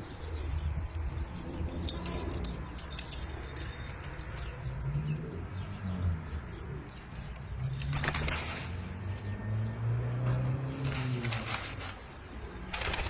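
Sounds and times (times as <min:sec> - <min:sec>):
pigeons cooing: 0:01.9 - 0:08.9, 0:10.2 - 0:13.0.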